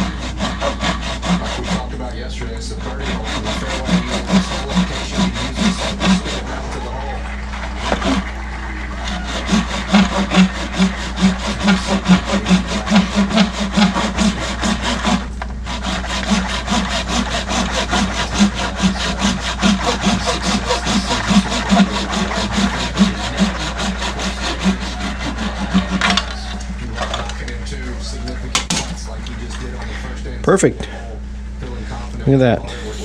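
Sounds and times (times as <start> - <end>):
hand saw cutting: 0.0 - 6.9, 7.7 - 8.3, 9.0 - 26.7, 32.8 - 33.0.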